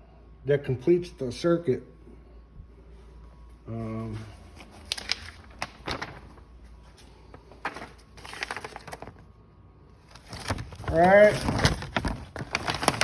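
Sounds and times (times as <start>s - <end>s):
hands handling wiring and plastic parts: 10.1s - 13.0s.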